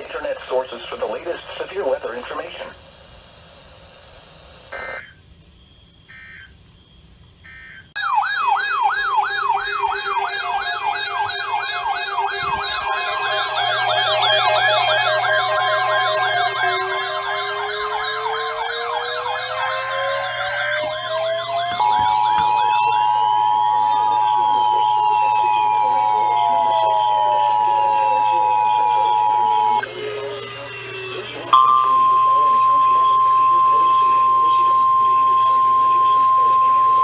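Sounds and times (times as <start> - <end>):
sirens warbling: 6.1 - 6.9, 7.5 - 37.0
siren winding up: 7.5 - 37.0.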